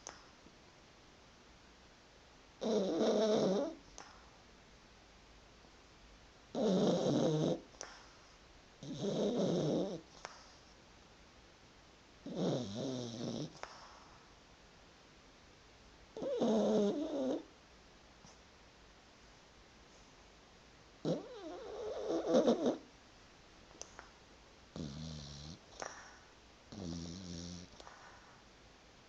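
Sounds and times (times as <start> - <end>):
dog snoring: 2.6 - 4.2, 6.5 - 8.2, 8.8 - 10.6, 12.2 - 14.2, 16.2 - 17.5, 21.0 - 22.9, 24.7 - 28.4.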